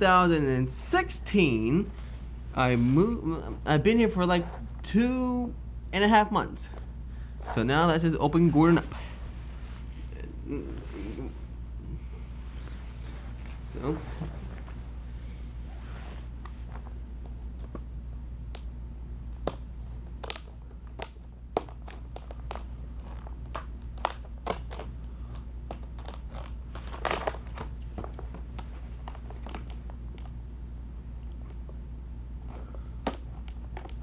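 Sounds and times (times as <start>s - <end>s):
steady low hum: 0.0s - 34.0s
packaging crinkling: 20.2s - 29.9s.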